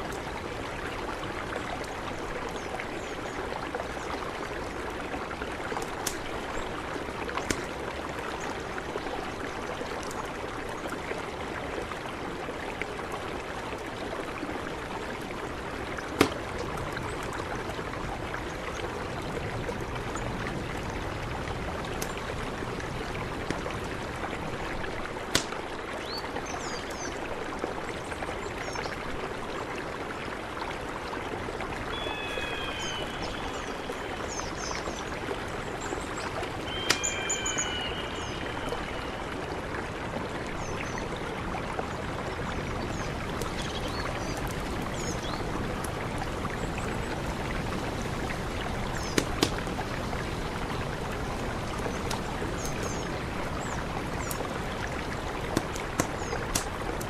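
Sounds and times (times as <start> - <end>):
river rushing: 29.0 - 57.0
bird chirping: 31.9 - 35.0, 36.6 - 39.0.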